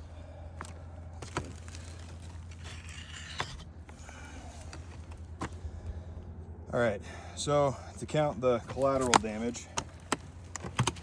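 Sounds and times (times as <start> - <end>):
steady low hum: 0.0 - 11.0
faint scraping: 0.6 - 5.6.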